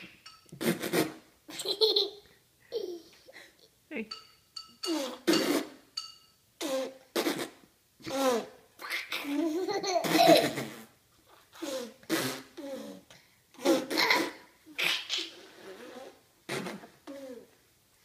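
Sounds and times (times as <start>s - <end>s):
child making silly vocal noises: 8.0s - 9.4s, 12.6s - 14.1s, 16.8s - 17.6s.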